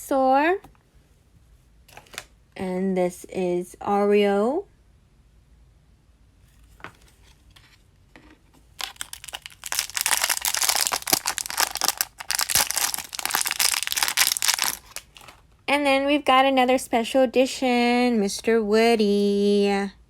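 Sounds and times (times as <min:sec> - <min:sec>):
plastic packaging crinkling: 0:08.7 - 0:15.5.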